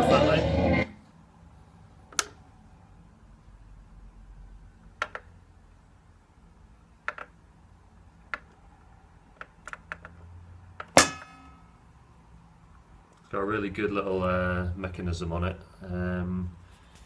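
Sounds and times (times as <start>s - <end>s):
clunk with metallic ring: 11.0s - 11.7s.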